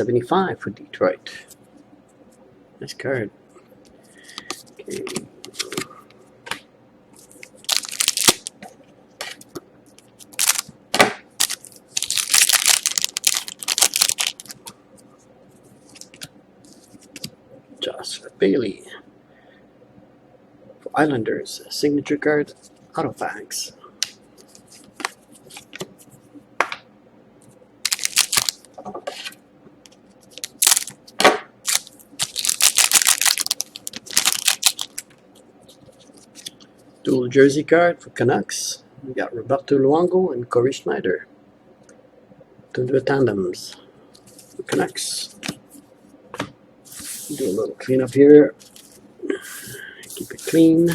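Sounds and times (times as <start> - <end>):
cards being handled: 7.2 - 8.5, 9.2 - 14.8, 24.0 - 25.9, 27.9 - 36.6
wrapper crinkling and tearing: 7.6 - 8.6, 10.2 - 10.7, 11.4 - 14.7, 27.8 - 28.7, 30.3 - 31.0, 31.6 - 35.2.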